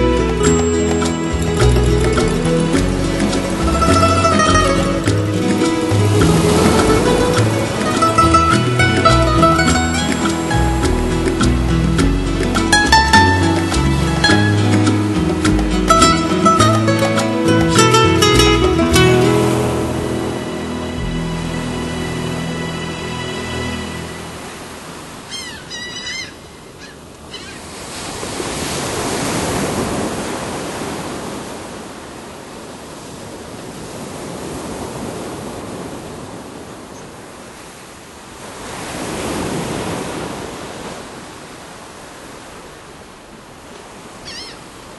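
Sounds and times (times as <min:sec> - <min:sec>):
surf washing ashore: 0:00.0 - 0:44.9
seagull calling: 0:25.1 - 0:27.8, 0:44.1 - 0:44.9.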